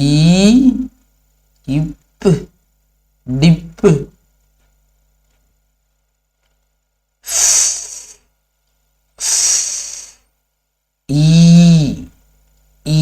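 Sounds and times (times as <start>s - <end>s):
person saying f sound: 0.0s - 1.0s, 1.6s - 2.6s, 3.2s - 4.2s, 7.2s - 8.2s, 9.2s - 10.2s, 11.1s - 12.2s.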